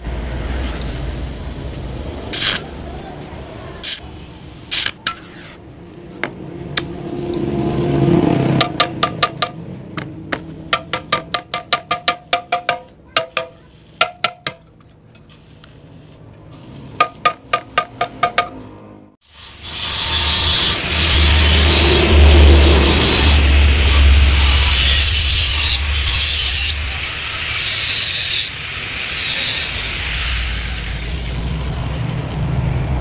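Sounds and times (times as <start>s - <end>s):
hammer striking metal: 8.5s - 14.8s, 17.0s - 18.8s
loud steady rasping: 19.3s - 31.4s.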